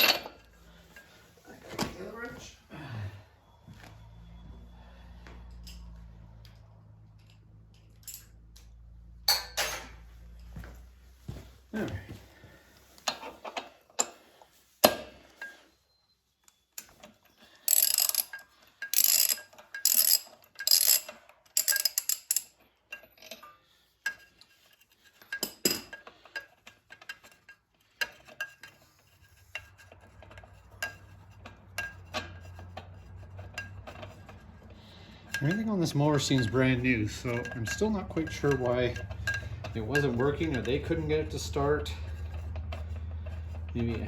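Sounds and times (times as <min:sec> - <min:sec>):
metal tools clinking: 0:00.0 - 0:02.6, 0:04.8 - 0:10.7, 0:16.8 - 0:44.0
socket ratchet clicking: 0:17.7 - 0:18.4, 0:19.0 - 0:22.5.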